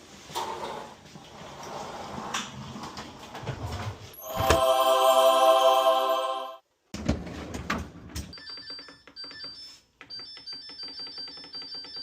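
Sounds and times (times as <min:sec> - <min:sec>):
tinkling electronic melody: 0:04.2 - 0:06.6.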